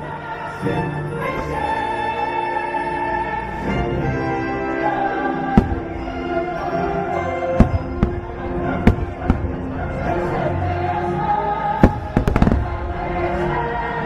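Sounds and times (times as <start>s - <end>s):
orchestral music with choir: 0.0s - 14.0s
fireworks bangs: 5.5s - 6.2s, 7.6s - 9.6s, 11.8s - 13.0s.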